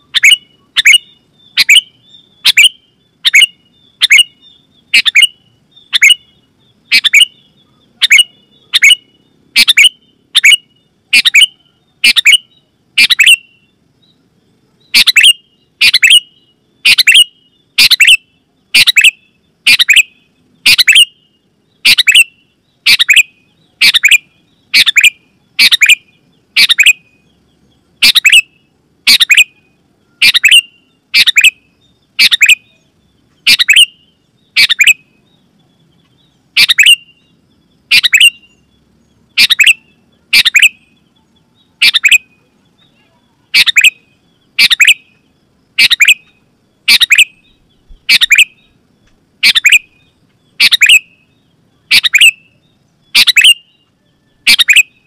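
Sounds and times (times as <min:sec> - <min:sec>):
bird giving sharp calls: 0:00.0 - 0:06.3, 0:06.9 - 0:12.4, 0:13.0 - 0:13.4, 0:14.9 - 0:18.2, 0:18.8 - 0:21.2, 0:21.8 - 0:26.0, 0:26.6 - 0:27.0, 0:28.0 - 0:28.5, 0:29.1 - 0:29.6, 0:30.2 - 0:31.6, 0:32.2 - 0:32.7, 0:33.4 - 0:35.0, 0:36.6 - 0:37.1, 0:37.9 - 0:38.5, 0:39.3 - 0:40.8, 0:41.8 - 0:42.3, 0:43.5 - 0:44.0, 0:44.6 - 0:45.0, 0:45.8 - 0:46.2, 0:46.9 - 0:47.4, 0:48.0 - 0:48.6, 0:49.4 - 0:49.9, 0:50.6 - 0:51.1, 0:51.9 - 0:52.4, 0:53.1 - 0:53.6, 0:54.4 - 0:54.9.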